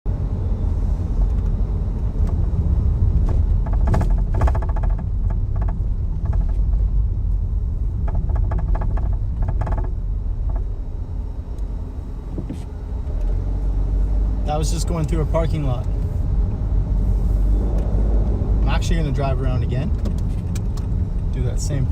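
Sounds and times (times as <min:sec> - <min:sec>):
car cabin rumble: 0:00.1 - 0:21.9
rapid clicking rattle: 0:03.6 - 0:06.8.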